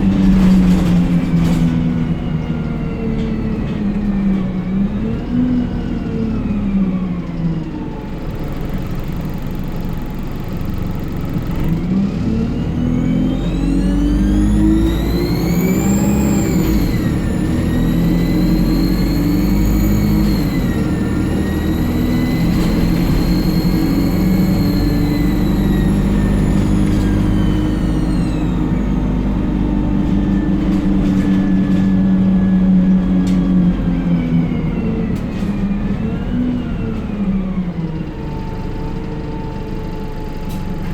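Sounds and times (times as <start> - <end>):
bus engine running: 0.0 - 40.9
turbocharger whistle: 13.1 - 28.9.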